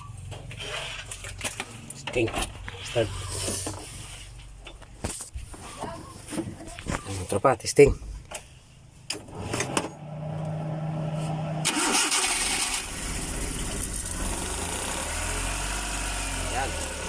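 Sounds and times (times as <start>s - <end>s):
engine revving and idling: 9.2s - 17.0s
starter motor cranking: 11.6s - 17.0s.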